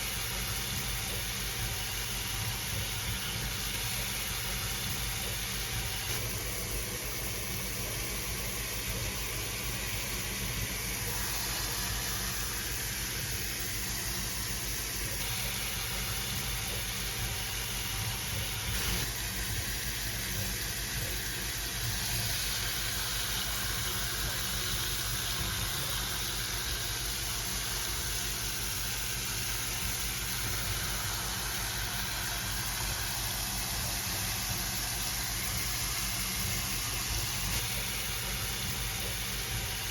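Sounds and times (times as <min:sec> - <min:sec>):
shower water spraying: 0:08.9 - 0:39.9.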